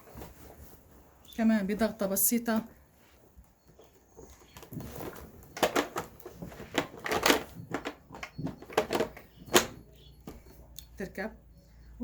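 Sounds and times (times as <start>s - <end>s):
plastic parts clicking and knocking: 3.8s - 10.6s.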